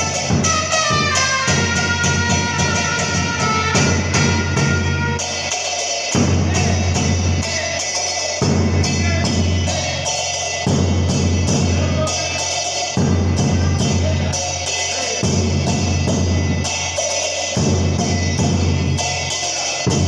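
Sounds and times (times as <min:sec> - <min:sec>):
trumpets playing held notes: 0:00.0 - 0:05.6
big drum steady beat: 0:00.0 - 0:20.0
crisp cymbal strokes: 0:00.0 - 0:20.0.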